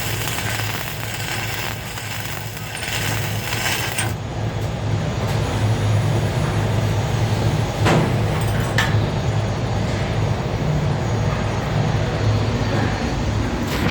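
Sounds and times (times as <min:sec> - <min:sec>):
hiss: 0:00.0 - 0:04.2.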